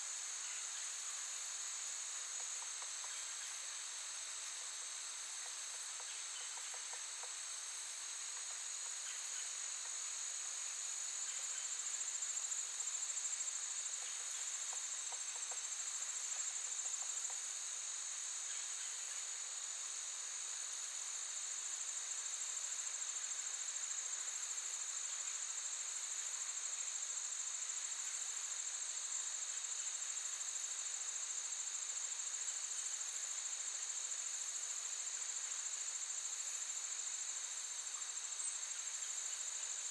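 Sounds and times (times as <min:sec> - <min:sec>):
insects trilling high-pitched: 0:00.0 - 0:39.9
lower insect trill: 0:00.0 - 0:39.9.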